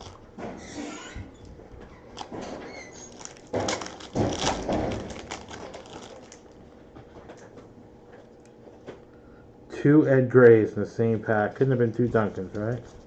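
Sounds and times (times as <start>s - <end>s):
cards rustling and clicking: 11.5s - 13.0s.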